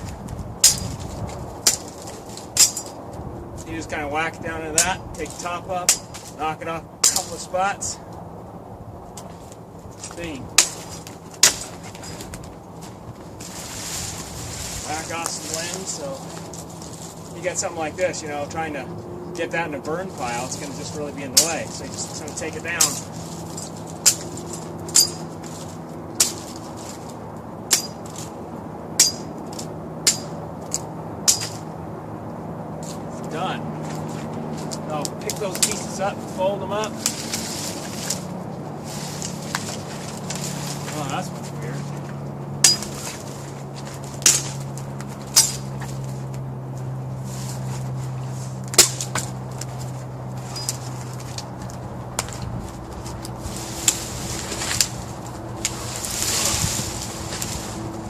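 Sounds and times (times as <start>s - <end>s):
sharp whacks chopping branches: 0.0s - 3.0s, 4.8s - 7.4s, 10.1s - 12.5s, 13.3s - 17.0s, 20.2s - 28.4s, 29.0s - 31.7s, 32.9s - 41.8s, 42.6s - 46.4s, 48.6s - 51.5s, 53.0s - 58.0s
steady low hum: 0.0s - 58.0s.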